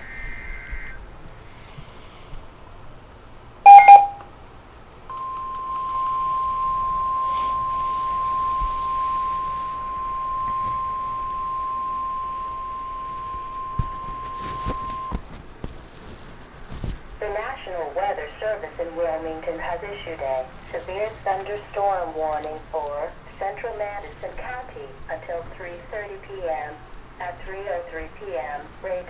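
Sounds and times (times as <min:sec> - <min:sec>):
steady alarm tone: 0:03.7 - 0:04.2, 0:05.1 - 0:15.2.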